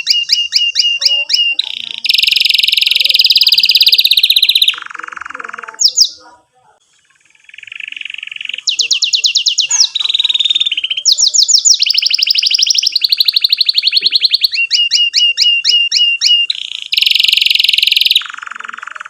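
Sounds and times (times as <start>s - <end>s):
canary singing trills: 0.0s - 19.0s.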